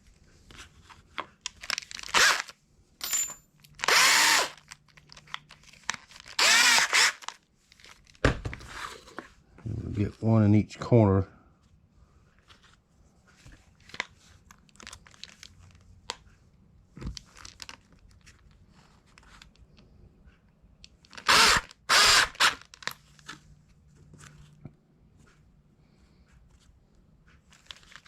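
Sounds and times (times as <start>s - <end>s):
drill boring through hard plastic: 2.1s - 2.5s, 3.8s - 4.6s, 6.4s - 7.3s, 21.2s - 22.6s.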